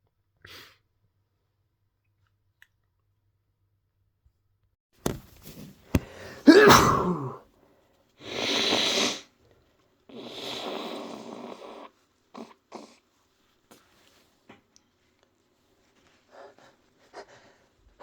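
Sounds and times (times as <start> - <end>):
person sneezing: 6.0 - 7.4
person sniffing: 6.0 - 7.4, 8.2 - 9.3, 10.1 - 11.9.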